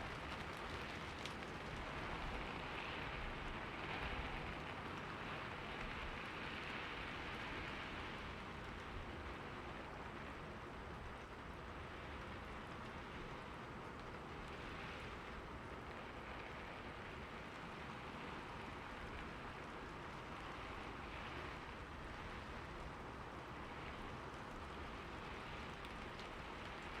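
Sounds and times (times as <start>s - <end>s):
raindrop ticks: 0.0s - 27.0s
steady rain: 0.0s - 27.0s.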